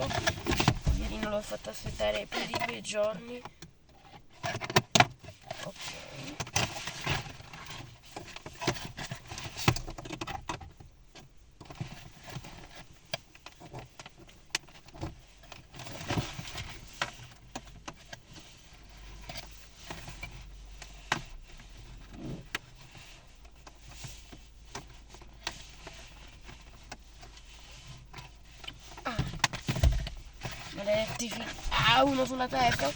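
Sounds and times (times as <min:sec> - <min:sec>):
low steady hum: 0:00.0 - 0:04.5, 0:05.3 - 0:32.9
plastic packaging rustling and clicking: 0:00.0 - 0:32.9.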